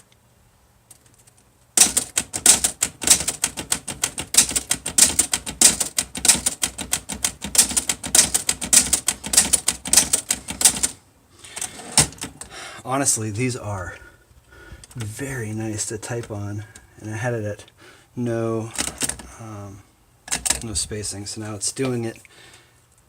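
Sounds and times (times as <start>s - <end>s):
manual typewriter typing: 0.9s - 12.5s, 18.7s - 19.3s, 20.3s - 20.7s.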